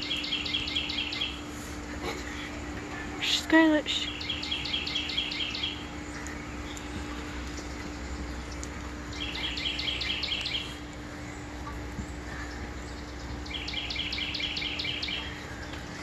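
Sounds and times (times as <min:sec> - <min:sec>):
songbird trilling: 0:00.0 - 0:01.4, 0:04.0 - 0:05.8, 0:09.1 - 0:10.8, 0:13.4 - 0:15.3
steady low hum: 0:00.0 - 0:16.0.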